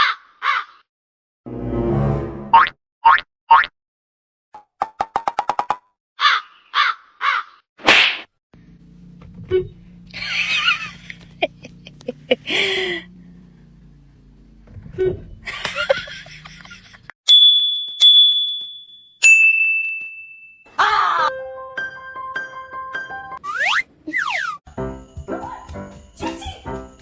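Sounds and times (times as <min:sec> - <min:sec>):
bell-like dings: 0:17.3 - 0:20.7.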